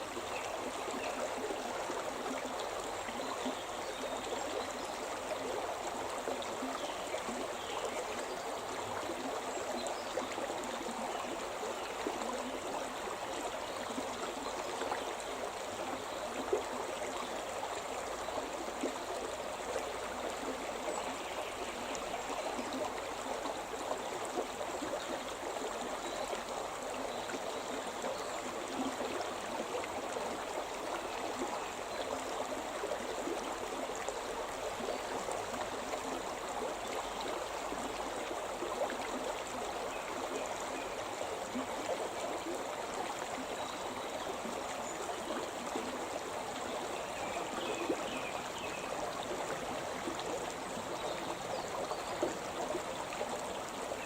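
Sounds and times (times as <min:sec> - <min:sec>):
stream burbling over stones: 0:00.0 - 0:54.0.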